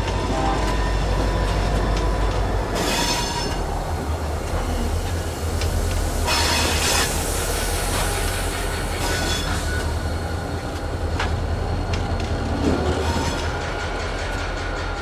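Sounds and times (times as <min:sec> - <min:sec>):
diesel locomotive rumble: 0:00.0 - 0:15.0
high wheel squeal: 0:02.6 - 0:05.3, 0:06.2 - 0:10.4.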